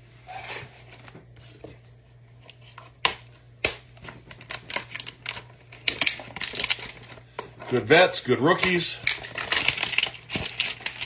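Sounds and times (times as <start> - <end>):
cards rustling: 4.0 - 11.0.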